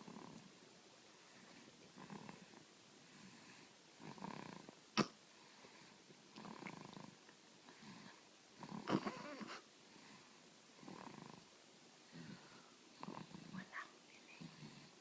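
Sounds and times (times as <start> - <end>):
baby snoring: 2.0 - 2.5, 4.0 - 4.7, 6.4 - 7.2, 7.8 - 9.6, 10.8 - 11.4, 12.1 - 13.7.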